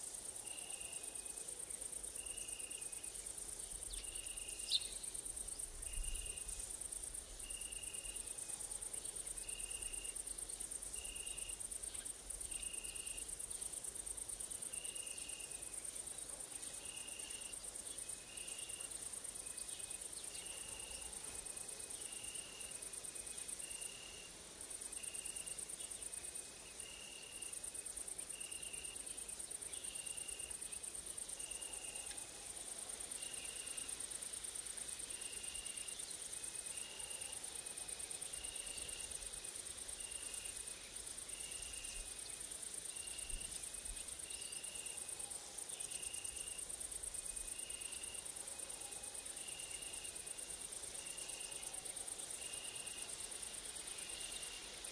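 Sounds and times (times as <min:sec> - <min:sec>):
insects buzzing trill: 0:16.8 - 0:54.9.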